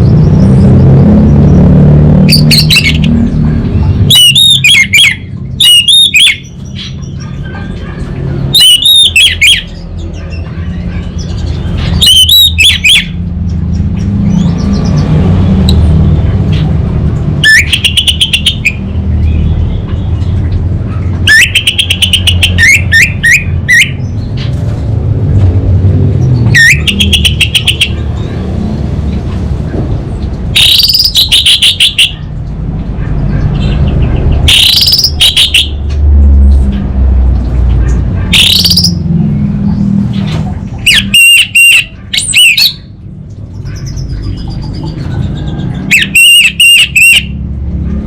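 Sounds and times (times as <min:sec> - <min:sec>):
bird singing rapid high notes: 0:02.2 - 0:15.9, 0:17.4 - 0:20.6, 0:21.3 - 0:24.4, 0:26.2 - 0:28.5, 0:30.6 - 0:32.4, 0:33.3 - 0:35.9, 0:38.3 - 0:47.4.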